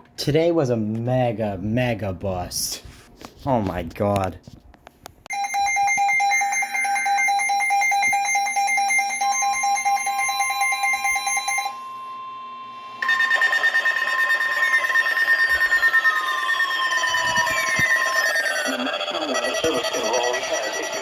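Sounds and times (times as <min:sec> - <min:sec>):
harsh falling sweep alarm: 0:05.3 - 0:21.0
rapidly pulsing alarm tone: 0:05.3 - 0:21.0
steady alarm tone: 0:05.3 - 0:21.0.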